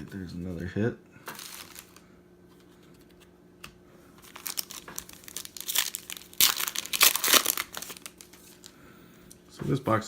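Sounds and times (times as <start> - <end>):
foil wrapper crinkling and tearing: 1.3 - 2.0, 4.2 - 8.8.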